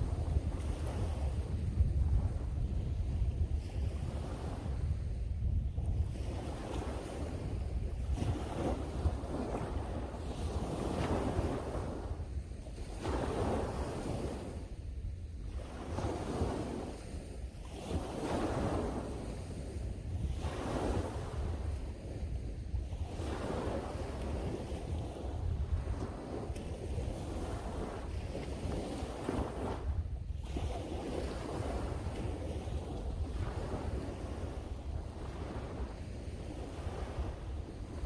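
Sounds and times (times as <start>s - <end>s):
wind buffeting microphone: 0.0s - 38.0s
sea waves washing ashore: 23.0s - 38.0s.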